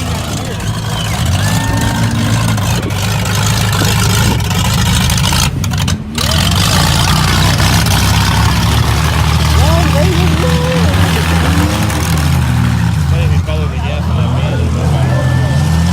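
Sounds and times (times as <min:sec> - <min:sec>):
minivan engines revving: 0:00.0 - 0:15.9.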